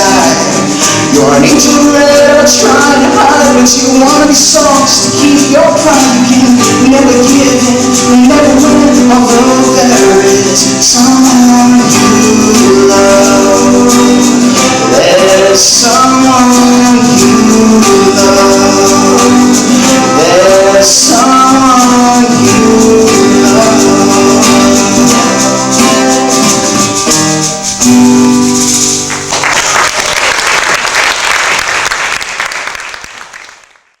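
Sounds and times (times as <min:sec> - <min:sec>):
live band with guitar: 0:00.0 - 0:33.6
audience applause: 0:29.0 - 0:34.0.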